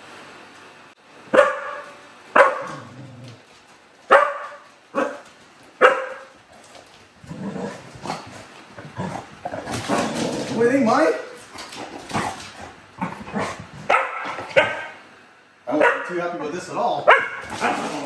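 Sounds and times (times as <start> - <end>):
dog barking: 1.3 - 3.0, 4.1 - 6.4, 13.9 - 15.0, 15.7 - 16.2, 17.0 - 18.0.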